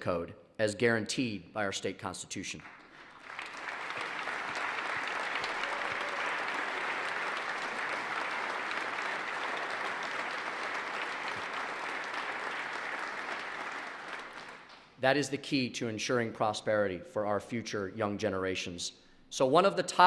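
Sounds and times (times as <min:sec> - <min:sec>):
audience applause: 0:02.7 - 0:14.8.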